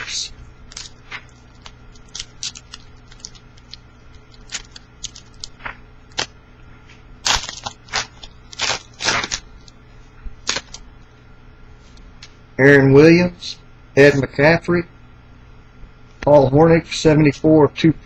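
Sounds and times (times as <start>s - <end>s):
card pack wrapper crinkling and tearing: 0.7s - 6.3s, 7.2s - 9.7s, 10.4s - 10.8s.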